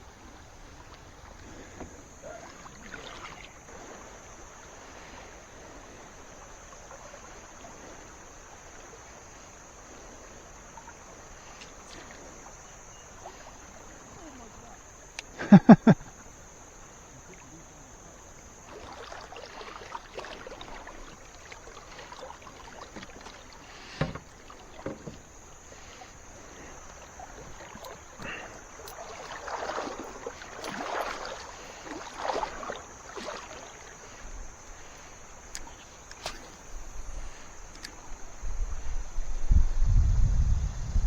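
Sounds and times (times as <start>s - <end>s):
water sloshing against canoe: 0.0s - 39.4s
knock against canoe: 23.9s - 25.3s.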